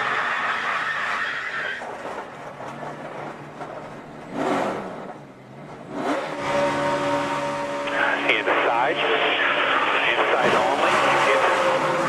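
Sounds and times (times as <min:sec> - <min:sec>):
race cars passing: 0:03.2 - 0:12.0.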